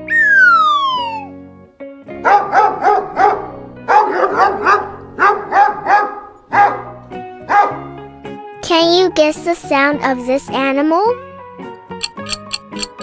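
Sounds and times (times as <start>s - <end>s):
light background music: 0.0s - 13.0s
dog barking: 2.2s - 7.9s.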